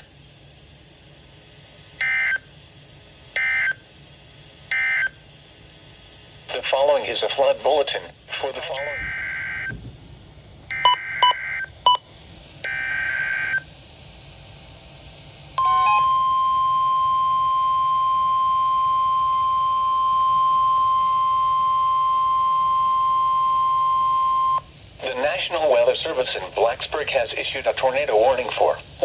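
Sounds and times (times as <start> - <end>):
steady warning alarm tone: 3.4 - 3.8, 4.7 - 5.2, 8.6 - 9.8, 10.7 - 12.0, 12.6 - 13.7, 15.6 - 24.7
short beeps: 10.7 - 12.0.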